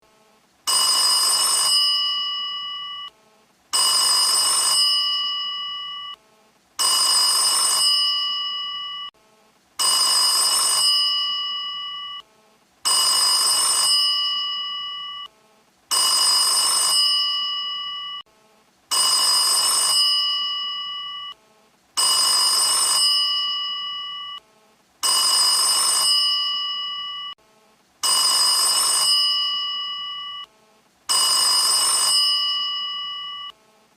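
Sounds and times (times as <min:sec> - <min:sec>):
telephone bell ringing: 0:00.7 - 0:03.2, 0:03.8 - 0:06.2, 0:06.8 - 0:09.2, 0:09.8 - 0:12.3, 0:12.9 - 0:15.3, 0:15.9 - 0:18.3, 0:18.9 - 0:21.4, 0:22.0 - 0:24.4, 0:25.0 - 0:27.4, 0:28.0 - 0:30.5, 0:31.1 - 0:33.6.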